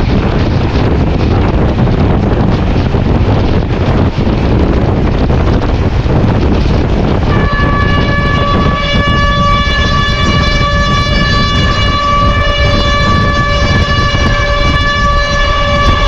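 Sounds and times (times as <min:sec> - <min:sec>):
diesel locomotive rumbling: 0:00.0 - 0:16.0
wind buffeting microphone: 0:00.0 - 0:16.0
locomotive horn: 0:07.3 - 0:16.0.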